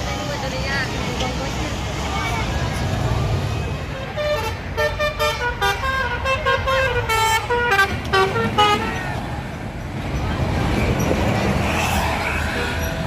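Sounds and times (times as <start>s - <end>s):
highway traffic rumble: 0.0s - 13.0s
bus musical horn playing a tune: 4.0s - 9.1s.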